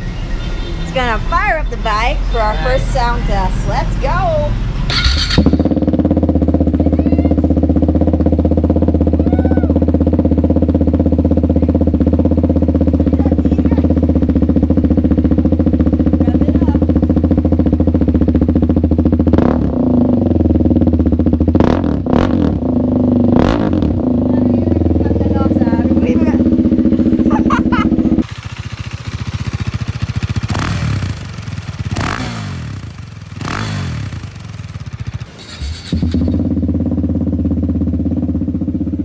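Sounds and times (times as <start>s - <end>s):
motorcycle engine idling and revving: 0.0s - 39.0s.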